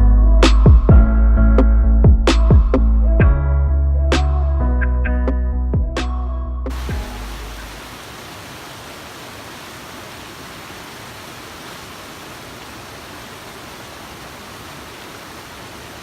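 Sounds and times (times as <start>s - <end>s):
waterfall roaring: 6.7s - 16.0s.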